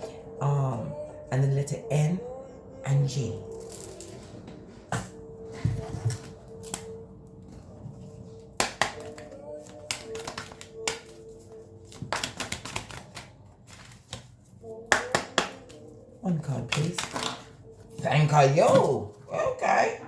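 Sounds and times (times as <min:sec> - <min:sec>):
soft background music: 0:00.0 - 0:20.0.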